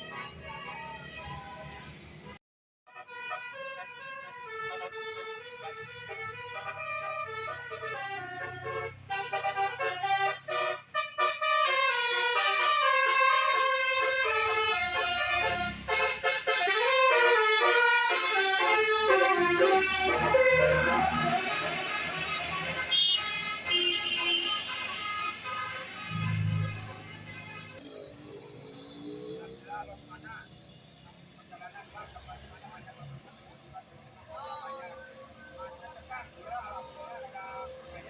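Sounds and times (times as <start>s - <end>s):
multi-tone air horn melody: 2.9s - 32.9s.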